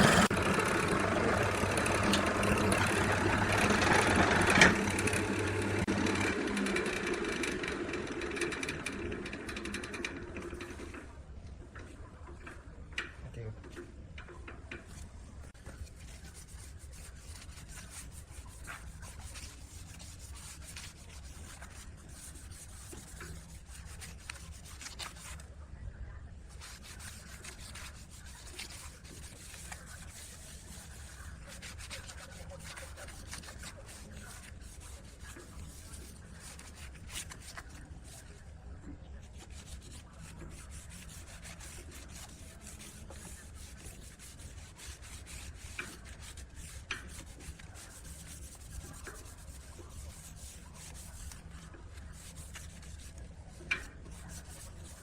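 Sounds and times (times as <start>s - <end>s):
scraping on wood: 0.0s - 5.9s.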